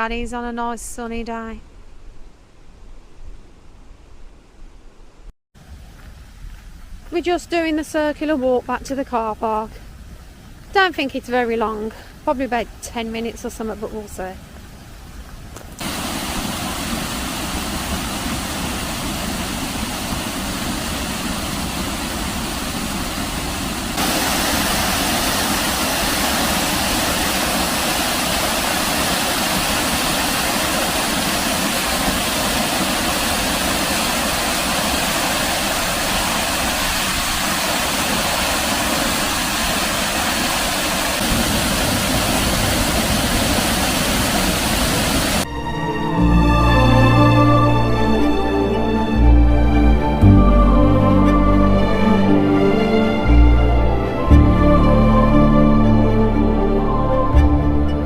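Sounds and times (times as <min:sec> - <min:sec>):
waterfall roaring: 0:10.4 - 0:45.5.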